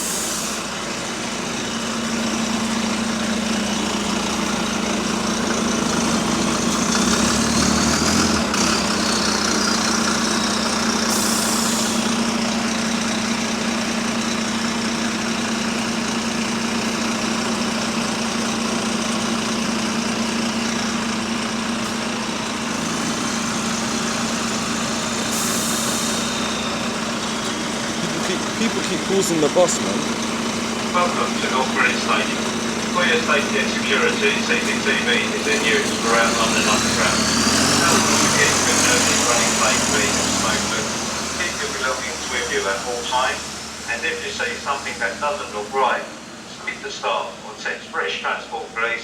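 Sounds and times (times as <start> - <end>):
air hissing: 0.0 - 0.7, 11.0 - 12.2, 24.3 - 27.2
bus engine idling: 0.0 - 49.0.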